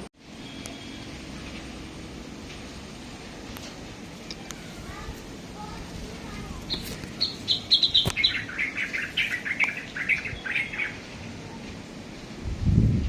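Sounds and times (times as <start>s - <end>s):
bird chirping: 4.3s - 11.6s.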